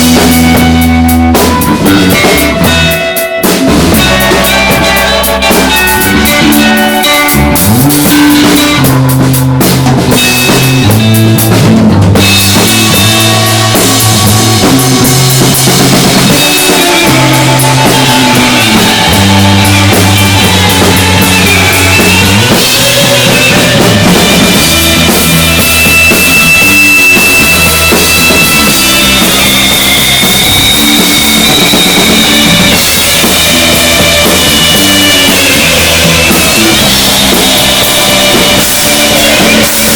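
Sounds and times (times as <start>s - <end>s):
bass guitar: 0.0s - 39.9s
distorted electric guitar: 0.0s - 39.9s
drum kit: 0.0s - 39.9s.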